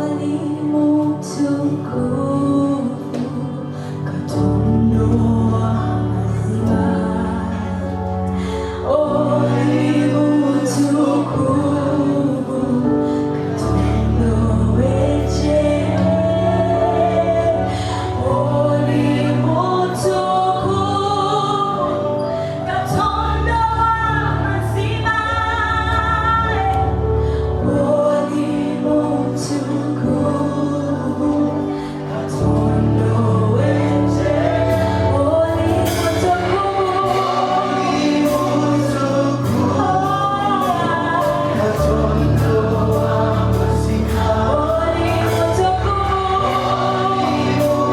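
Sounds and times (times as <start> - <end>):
gospel choir singing: 0.0 - 47.9
bass line: 32.4 - 47.9
drums: 32.4 - 47.9.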